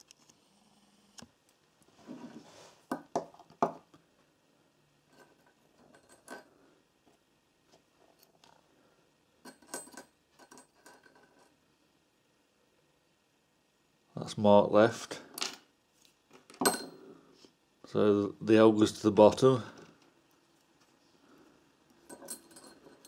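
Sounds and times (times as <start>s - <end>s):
small metal parts clinking: 5.1s - 6.6s, 9.4s - 11.5s, 22.0s - 23.0s.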